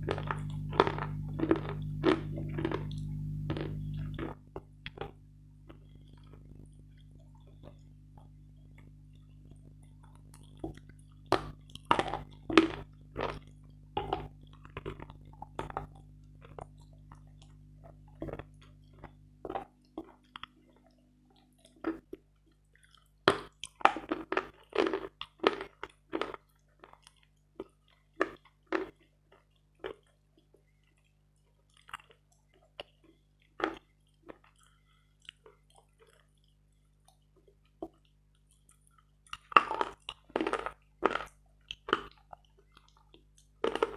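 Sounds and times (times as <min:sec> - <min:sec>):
mouth crunching and chewing chalk: 0:00.0 - 0:43.9.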